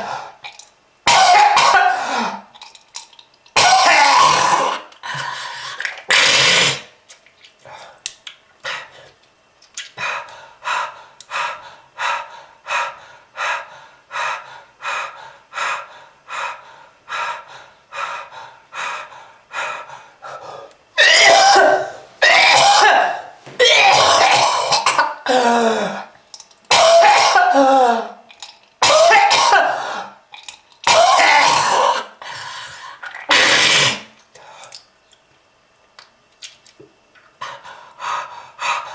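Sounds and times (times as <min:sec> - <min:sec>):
rasping coughing fits: 0:00.0 - 0:02.4, 0:03.6 - 0:04.9, 0:21.0 - 0:25.4, 0:26.7 - 0:27.7, 0:28.8 - 0:29.9, 0:30.8 - 0:32.1, 0:33.2 - 0:34.0
short hacking coughs: 0:01.1 - 0:02.0, 0:21.0 - 0:25.2, 0:26.7 - 0:27.6, 0:28.8 - 0:29.8.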